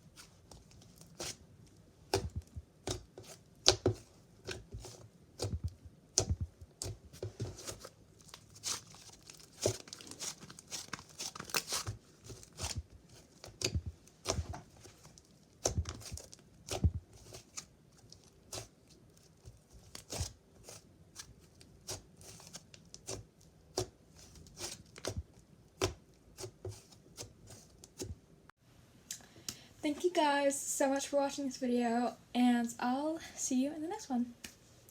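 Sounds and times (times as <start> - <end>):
slime crackling and popping: 7.7 - 26.5.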